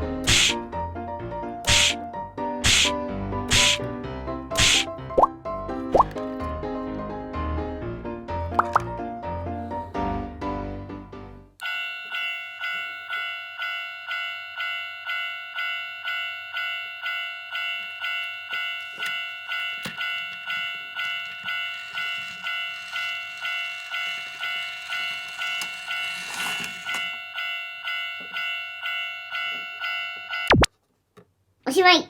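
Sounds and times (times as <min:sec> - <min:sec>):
background music: 0:00.0 - 0:11.5
electronic crossing warning bell: 0:11.6 - 0:30.5.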